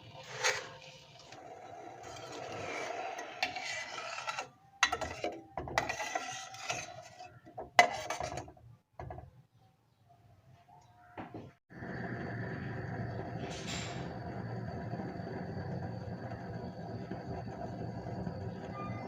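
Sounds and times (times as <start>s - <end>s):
kitchen utensils scraping: 0.1s - 8.6s.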